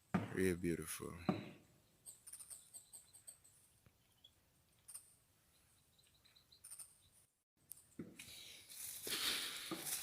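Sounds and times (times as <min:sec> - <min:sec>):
faint high-pitched chirps: 0:01.8 - 0:07.3.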